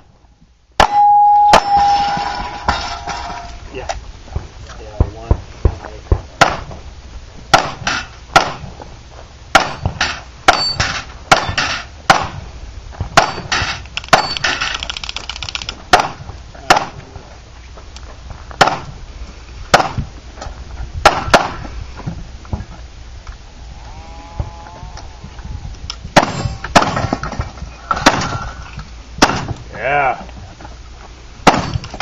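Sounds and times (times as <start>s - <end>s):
loud sharp bangs: 6.1s - 6.8s, 7.5s - 8.8s, 9.5s - 12.5s, 13.1s - 14.7s, 15.9s - 17.0s, 18.6s - 19.0s, 19.7s - 20.1s, 21.0s - 21.7s, 26.1s - 28.6s, 29.2s - 29.6s, 31.4s - 32.0s.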